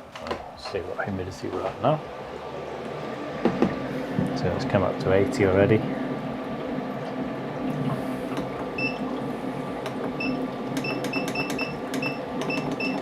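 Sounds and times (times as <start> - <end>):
humidifier and fans humming: 0.0 - 13.0
keypad beeps: 8.8 - 9.0, 10.2 - 13.0.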